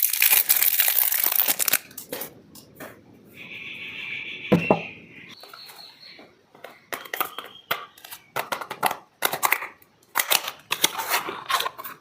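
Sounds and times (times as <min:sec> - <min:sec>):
soap packaging crinkling: 0:00.0 - 0:02.0, 0:07.0 - 0:12.0.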